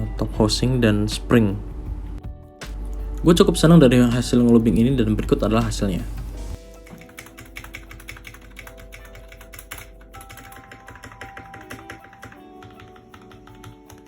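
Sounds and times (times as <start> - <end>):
background music: 0.0 - 14.0
mechanical keyboard typing: 6.8 - 14.0.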